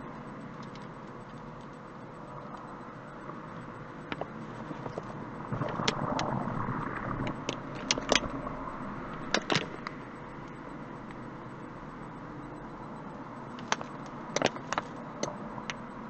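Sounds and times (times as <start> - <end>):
sharp clicks and knocks: 4.1 - 6.4, 7.1 - 10.6, 13.5 - 15.9.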